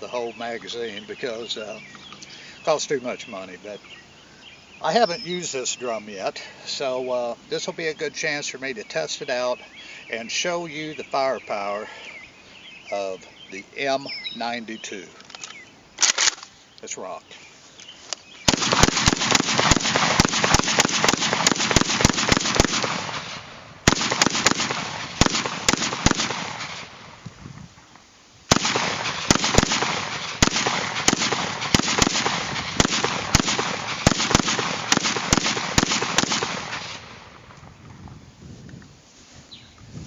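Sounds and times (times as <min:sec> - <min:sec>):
rapid pistol shots with echo: 0:18.5 - 0:27.0, 0:28.5 - 0:37.4.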